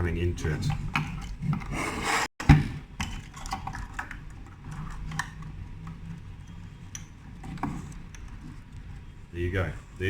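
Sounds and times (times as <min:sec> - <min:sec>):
plastic parts clicking and tapping: 0:00.6 - 0:01.7, 0:02.4 - 0:06.1.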